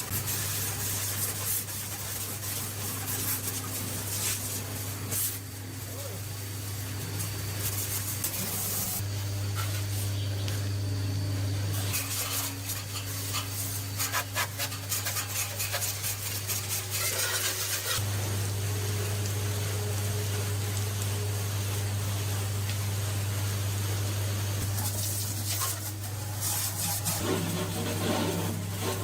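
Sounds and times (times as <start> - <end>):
steady low hum: 0.0 - 17.1
hand rubbing and scraping: 11.9 - 18.0.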